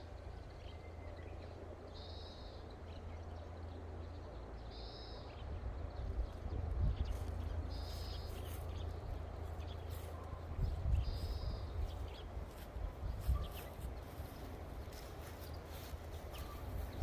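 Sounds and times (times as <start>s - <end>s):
wind rumbling on microphone: 5.5s - 17.0s
faint bird chirps: 9.7s - 17.0s.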